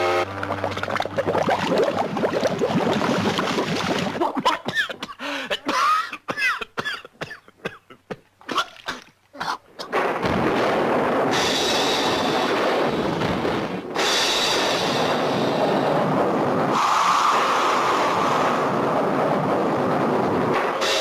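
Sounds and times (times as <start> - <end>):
crackling clatter: 8.6 - 15.2
steady rushing noise: 9.9 - 21.0.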